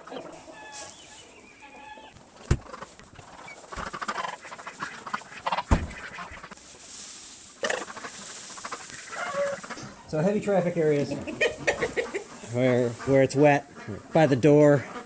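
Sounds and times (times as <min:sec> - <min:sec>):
chickens clucking: 0:00.0 - 0:15.0
sharp knocks: 0:02.5 - 0:04.0, 0:05.7 - 0:06.2.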